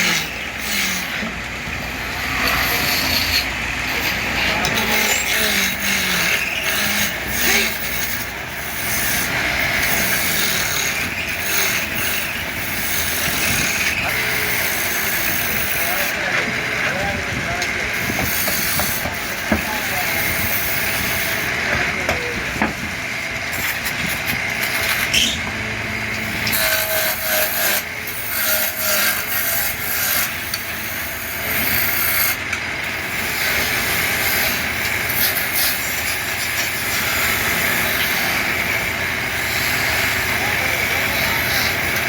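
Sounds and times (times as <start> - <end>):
lathe tool scraping wood: 0.0 - 42.0
short pitched squeaks: 2.5 - 8.1, 24.8 - 25.5.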